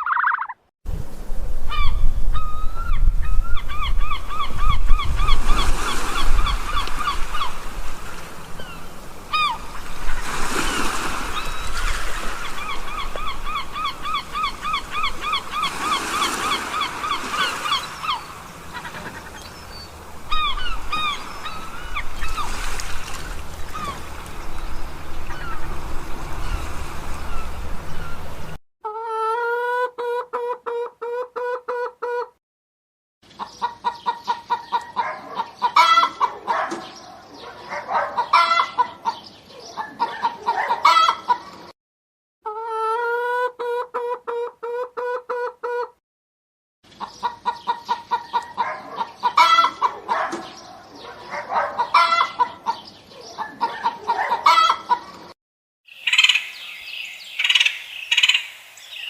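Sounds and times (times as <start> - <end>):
high-pitched bird call: 0.0 - 0.6, 55.9 - 59.0
chickens clucking and cackling: 9.3 - 19.5, 28.8 - 32.4, 33.3 - 41.7, 42.5 - 46.0, 46.9 - 55.3.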